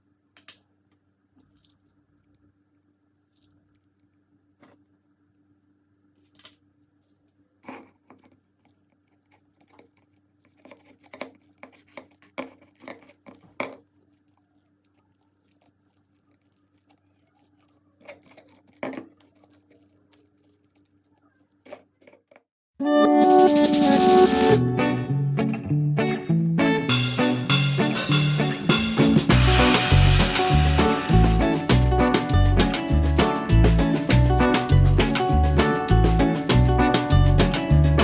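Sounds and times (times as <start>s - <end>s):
slime squishing and crackling: 7.7s - 22.4s.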